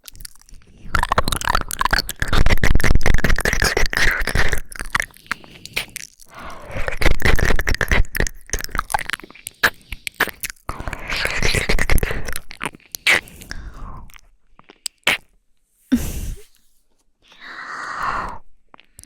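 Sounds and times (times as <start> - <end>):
crackling and scraping noises: 0.0 - 15.4.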